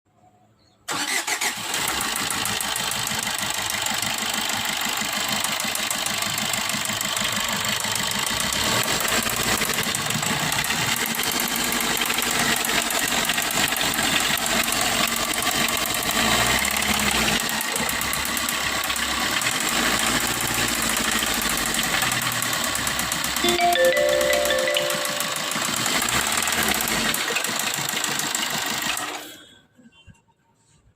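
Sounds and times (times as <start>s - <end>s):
car engine starting: 0.9s - 23.4s
rapid knock inside engine: 2.3s - 23.4s, 25.8s - 29.1s.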